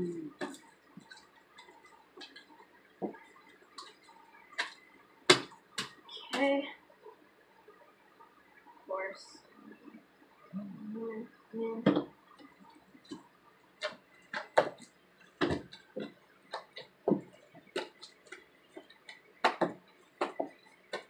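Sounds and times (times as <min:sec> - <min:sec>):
slime squelching and clicking: 0:00.4 - 0:06.5, 0:13.8 - 0:21.0.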